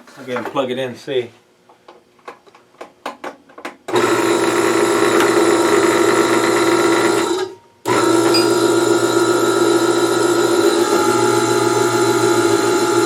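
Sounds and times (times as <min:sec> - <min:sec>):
air compressor running: 0:03.9 - 0:13.0.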